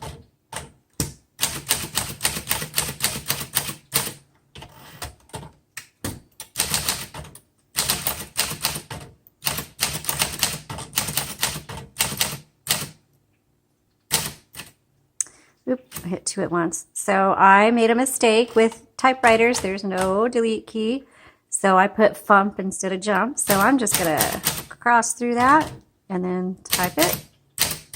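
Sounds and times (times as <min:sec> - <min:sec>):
manual typewriter typing: 0:00.0 - 0:13.0, 0:14.1 - 0:14.8, 0:18.3 - 0:20.4, 0:23.4 - 0:24.8, 0:25.4 - 0:25.8, 0:26.7 - 0:27.9
typewriter rasping: 0:01.4 - 0:05.5, 0:06.4 - 0:13.0, 0:23.4 - 0:24.7, 0:26.7 - 0:27.9.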